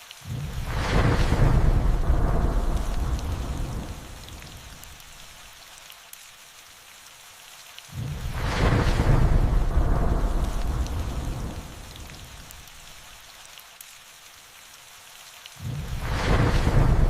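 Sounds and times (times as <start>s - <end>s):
steady rain hiss: 0.0s - 17.0s
sudden thunderclap: 0.3s - 4.9s, 8.0s - 12.5s, 15.6s - 17.0s
rolling thunder rumble: 0.3s - 5.1s, 8.0s - 12.8s, 15.6s - 17.0s.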